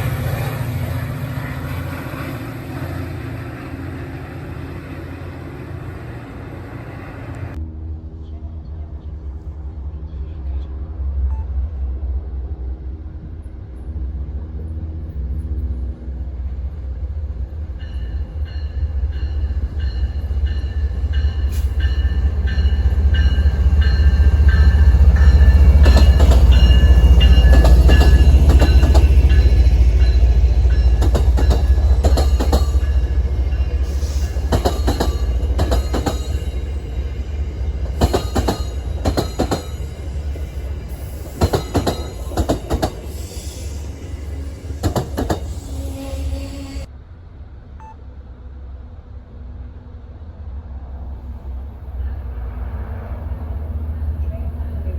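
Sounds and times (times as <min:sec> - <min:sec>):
train rumbling past: 0:00.0 - 0:54.9
wheels clacking over rail joints: 0:17.8 - 0:43.3, 0:44.8 - 0:45.7.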